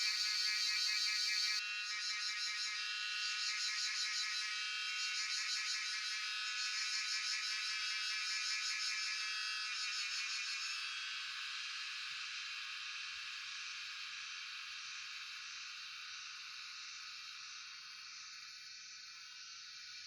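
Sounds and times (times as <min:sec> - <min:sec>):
cicadas buzzing: 0:00.0 - 0:10.7, 0:14.9 - 0:20.0.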